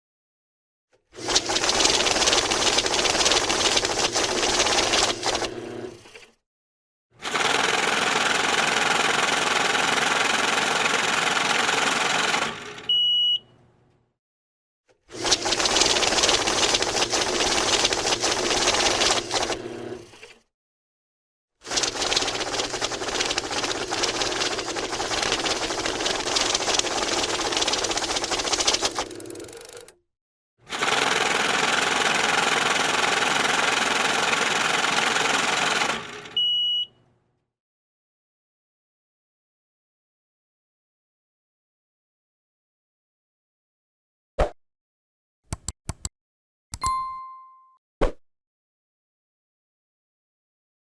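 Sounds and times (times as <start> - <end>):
banknote counting machine whirring: 1.2 - 6.0, 7.2 - 13.0, 15.1 - 20.1, 21.7 - 29.9, 30.7 - 36.4
short high beep: 36.4 - 36.9, 46.8 - 47.8.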